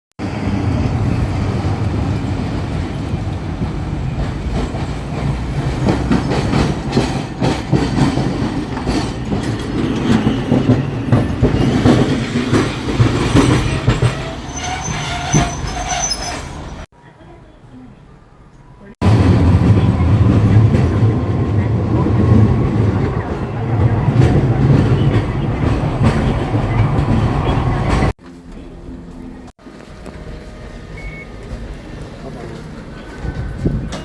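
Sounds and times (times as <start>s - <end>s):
streetcar rumbling on rails: 0.2s - 34.0s
wheels clacking over rail joints: 1.6s - 16.9s, 22.2s - 34.0s
wheel squeal: 9.2s - 16.8s.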